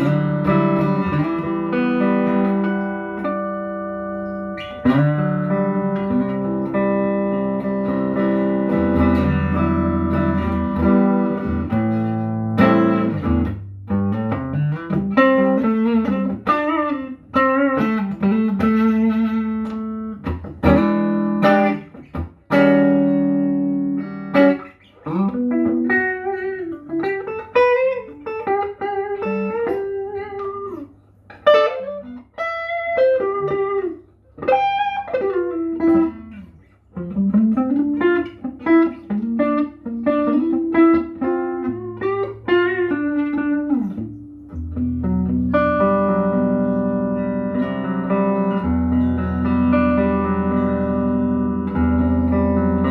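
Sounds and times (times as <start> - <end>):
electric guitar through amplifier: 0.0 - 52.9.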